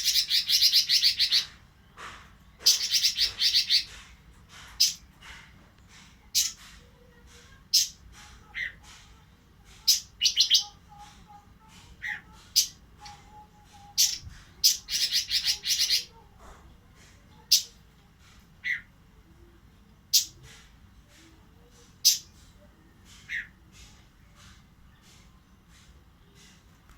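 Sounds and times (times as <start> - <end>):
bird trilling: 0.0 - 1.6, 2.6 - 3.9, 9.8 - 10.8, 13.8 - 16.2
bird calling: 2.6 - 4.0.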